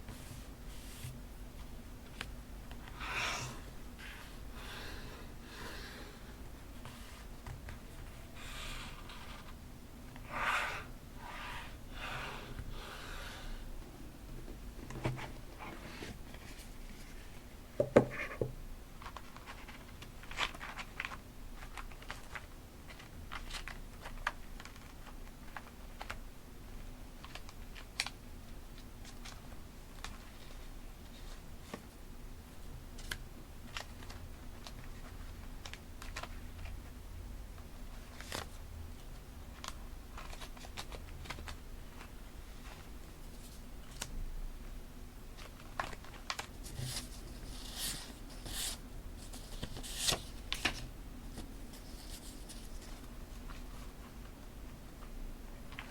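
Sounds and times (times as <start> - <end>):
paper rustling: 45.4 - 53.9.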